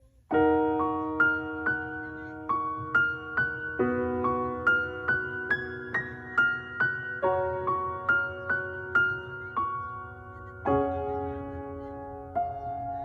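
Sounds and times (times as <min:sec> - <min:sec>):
slow sad piano music: 0:00.1 - 0:13.0.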